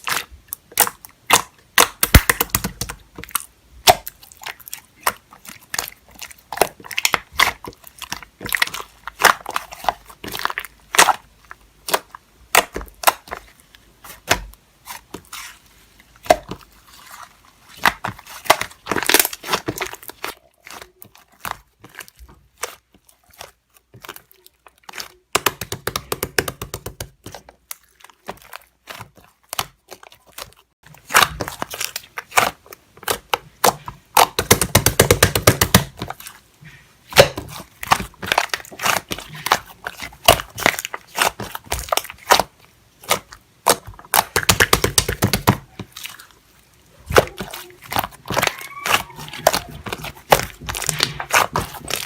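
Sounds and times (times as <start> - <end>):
slime squeezed by hand: 47.0 - 52.0.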